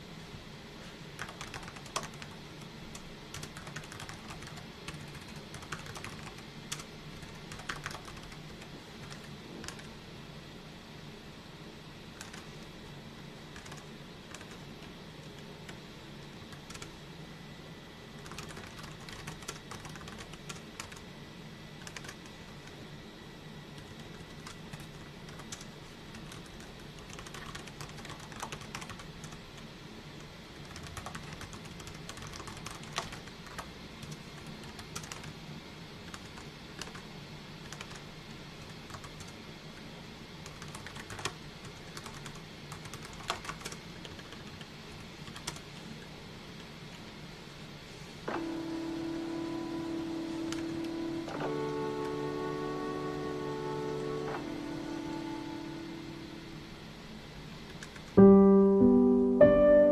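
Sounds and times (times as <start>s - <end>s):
low steady hum: 0.0s - 59.9s
typing on computer keyboard: 1.2s - 9.9s, 12.2s - 12.7s, 13.6s - 15.8s, 16.5s - 16.9s, 18.2s - 21.0s, 21.8s - 22.8s, 23.8s - 29.4s, 30.6s - 35.4s, 36.1s - 37.0s, 37.6s - 38.0s, 38.6s - 39.4s, 40.4s - 45.9s, 57.7s - 58.2s.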